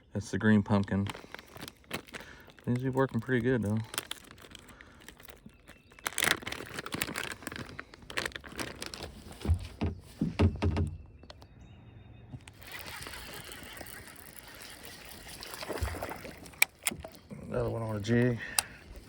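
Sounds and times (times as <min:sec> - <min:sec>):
plastic bag crinkling: 0:00.4 - 0:09.9, 0:12.5 - 0:16.4
dull knocks: 0:09.4 - 0:11.1.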